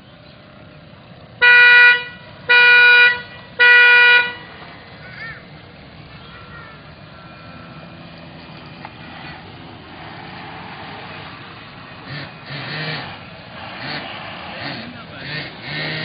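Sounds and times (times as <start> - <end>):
horn honking: 1.4 - 5.1.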